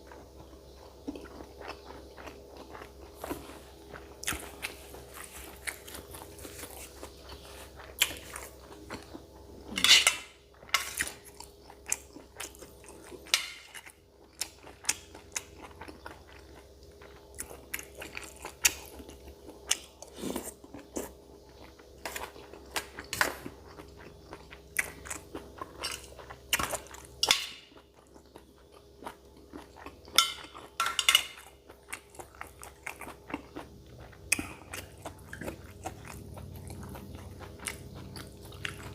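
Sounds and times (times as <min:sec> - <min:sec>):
faint steady hum: 0:00.0 - 0:38.9
person chewing and crunching: 0:00.0 - 0:38.9
cutlery clinking on dish: 0:09.8 - 0:11.0, 0:30.2 - 0:31.5.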